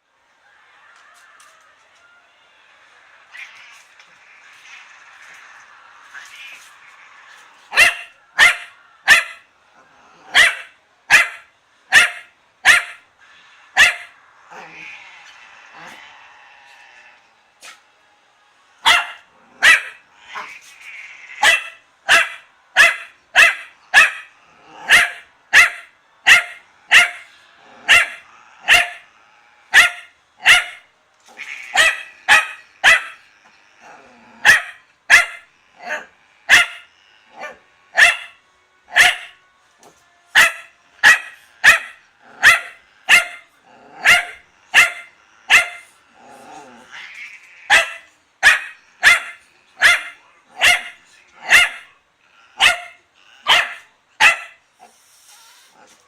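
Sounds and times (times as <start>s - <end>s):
dog barking: 7.7s - 9.4s, 10.3s - 13.0s, 13.8s - 14.2s, 18.8s - 20.0s, 21.4s - 24.3s, 24.9s - 27.2s, 27.9s - 29.0s, 29.7s - 30.8s, 31.7s - 33.2s, 34.4s - 39.3s, 40.4s - 45.8s, 47.7s - 52.0s, 52.6s - 54.6s.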